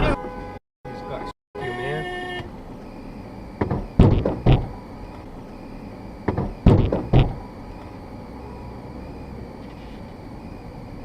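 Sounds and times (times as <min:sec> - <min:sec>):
loud heavy thumps: 0:03.6 - 0:04.8, 0:06.2 - 0:07.4.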